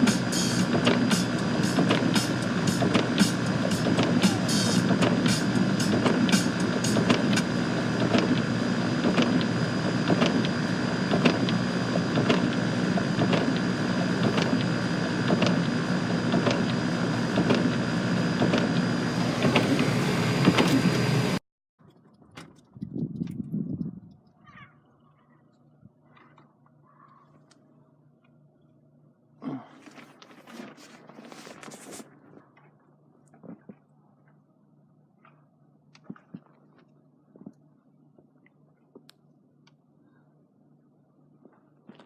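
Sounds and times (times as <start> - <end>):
machine running with hum: 0.0 - 21.4.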